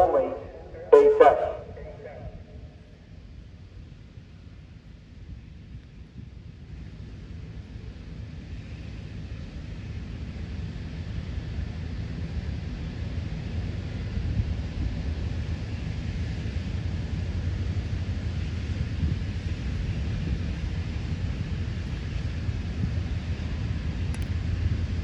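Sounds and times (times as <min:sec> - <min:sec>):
low outdoor rumble: 0:00.0 - 0:15.6.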